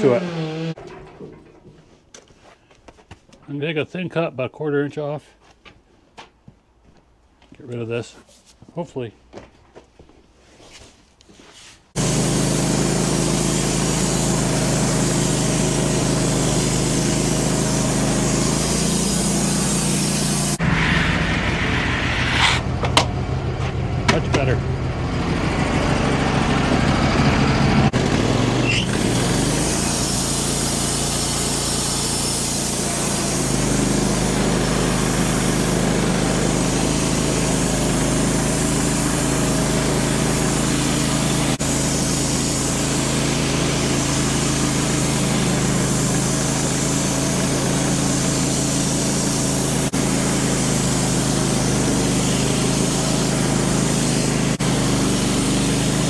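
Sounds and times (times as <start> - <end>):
band saw blade cutting log: 0.0 - 1.8, 12.0 - 24.6, 25.2 - 56.0
sawmill engine running: 0.0 - 2.0, 12.0 - 56.0.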